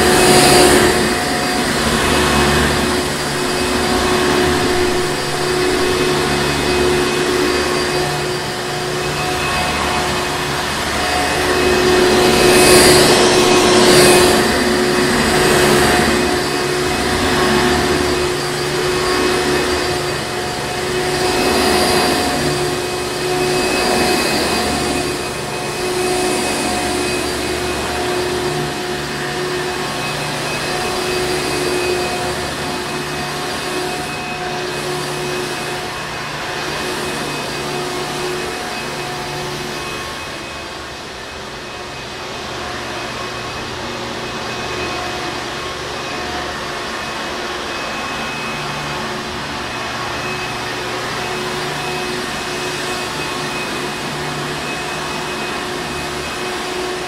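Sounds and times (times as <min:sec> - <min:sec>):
upright vacuum cleaner running: 0:00.0 - 0:57.0.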